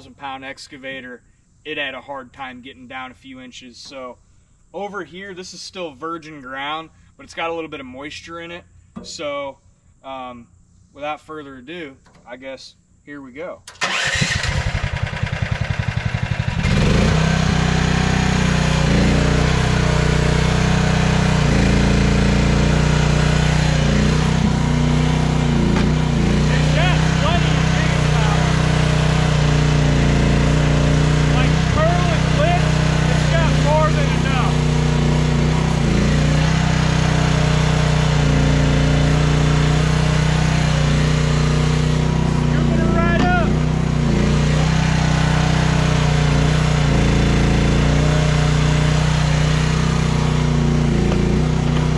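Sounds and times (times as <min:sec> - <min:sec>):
engine starter cranking: 0:13.6 - 0:17.2
engine running: 0:13.7 - 0:51.9.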